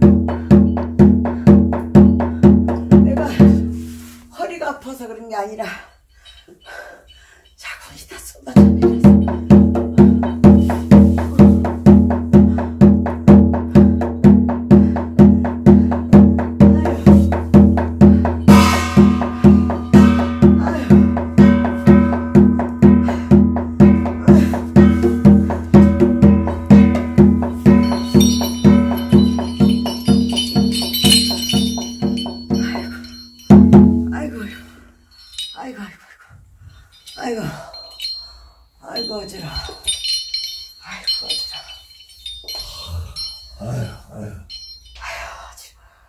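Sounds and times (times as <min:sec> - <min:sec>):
drum beaten steadily: 0:00.0 - 0:03.9, 0:08.5 - 0:35.6
high metallic ringing: 0:08.6 - 0:11.7, 0:18.4 - 0:45.4.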